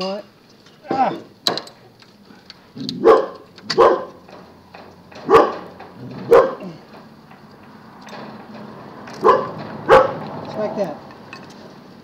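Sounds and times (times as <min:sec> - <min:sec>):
dog barking: 0:02.9 - 0:04.2, 0:05.2 - 0:06.8, 0:09.2 - 0:10.2.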